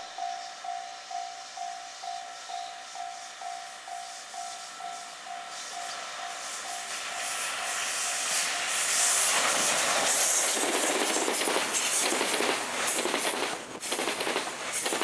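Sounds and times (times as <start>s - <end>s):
level-crossing warning bell: 0.0s - 8.9s
freight train approaching: 0.0s - 15.0s
locomotive rushing hiss: 0.0s - 15.0s.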